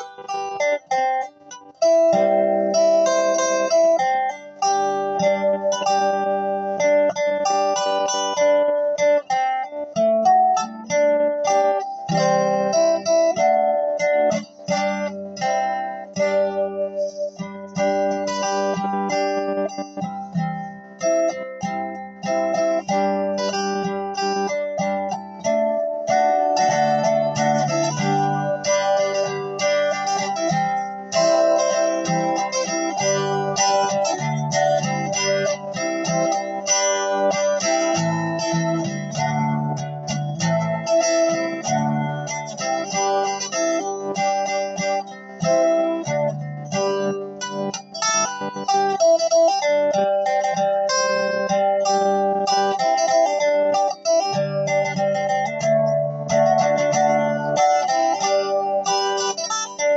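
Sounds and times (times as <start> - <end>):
acoustic guitar strumming chords: 0.0 - 59.9.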